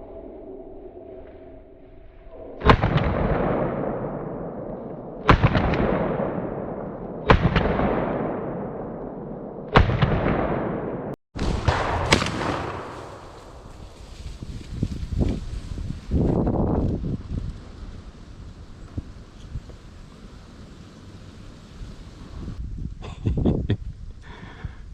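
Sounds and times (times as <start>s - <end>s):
shotgun shots with echo: 2.6s - 13.9s.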